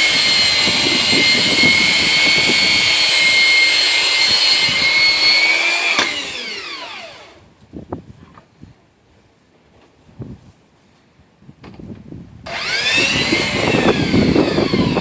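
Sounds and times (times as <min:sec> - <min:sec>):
belt sander whining: 0:00.0 - 0:07.5, 0:12.5 - 0:15.0.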